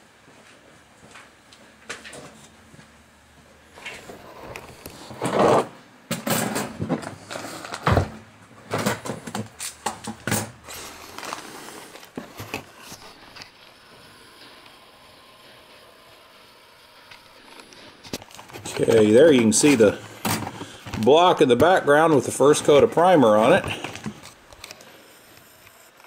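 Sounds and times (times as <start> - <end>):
objects knocking and scraping: 3.8 - 13.5, 18.0 - 24.8.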